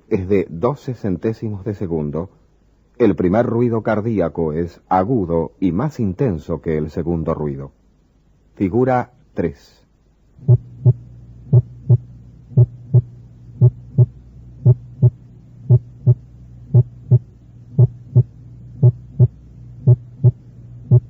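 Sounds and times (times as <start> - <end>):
steady low hum: 0.0 - 21.0
heartbeat thumps: 10.4 - 21.0.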